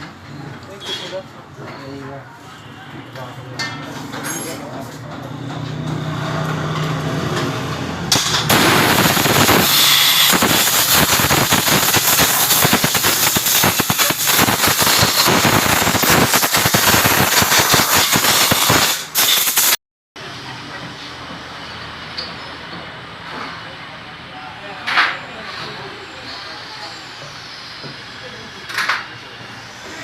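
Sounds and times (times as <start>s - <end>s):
motorcycle engine revving: 5.4s - 11.0s.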